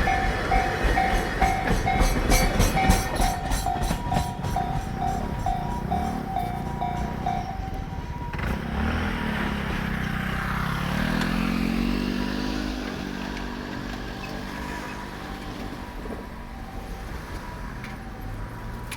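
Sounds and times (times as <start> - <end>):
level-crossing bell ringing: 0.0 - 9.1, 14.6 - 18.8
vehicle engine pulling away: 5.4 - 15.2.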